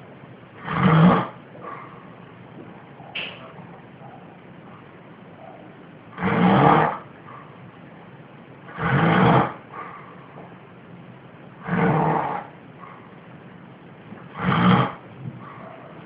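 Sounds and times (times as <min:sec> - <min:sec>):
loud snoring: 0:00.6 - 0:01.4, 0:06.2 - 0:07.1, 0:08.7 - 0:09.6, 0:11.6 - 0:12.5, 0:14.3 - 0:15.0.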